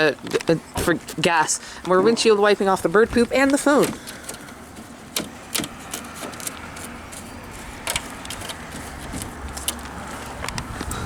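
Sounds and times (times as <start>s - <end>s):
vehicle low rumble: 0.0s - 11.0s.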